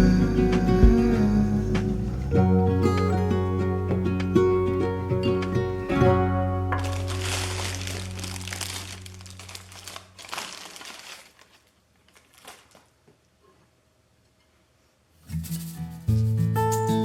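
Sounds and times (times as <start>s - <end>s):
background music with low notes: 0.0s - 9.0s
dense crackling noise: 6.8s - 13.0s.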